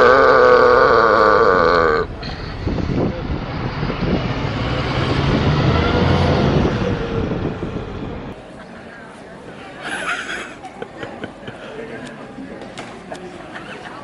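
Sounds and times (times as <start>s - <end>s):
loud wavering burp: 0.0s - 2.1s
low traffic rumble: 0.0s - 14.0s.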